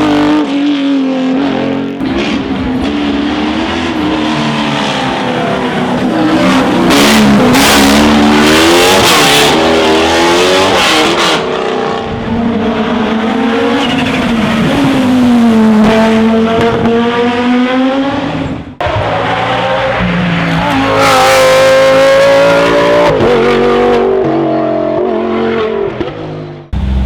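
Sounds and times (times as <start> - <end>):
racing car engine accelerating: 0.0 - 27.0
another engine: 26.7 - 27.0.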